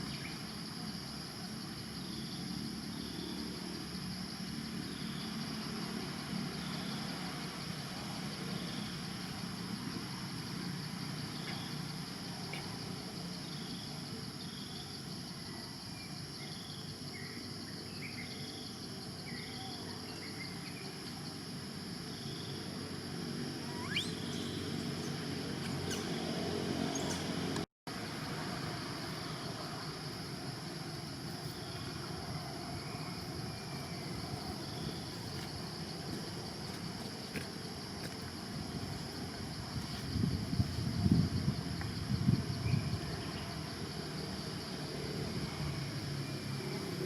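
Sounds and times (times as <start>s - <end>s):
high insect drone: 0.0s - 47.0s
bird-like calls: 23.7s - 24.6s.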